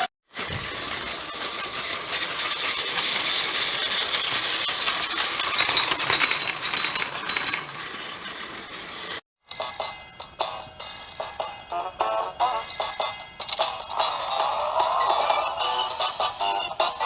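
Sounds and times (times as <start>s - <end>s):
toy train rattling on plastic track: 4.3s - 8.2s.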